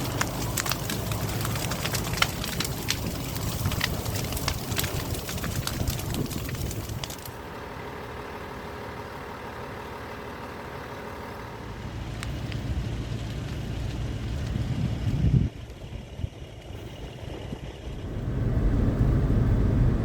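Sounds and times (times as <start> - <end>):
sharp crackling clicks: 0.0 - 7.4
vehicle engine rumbling: 0.0 - 20.0.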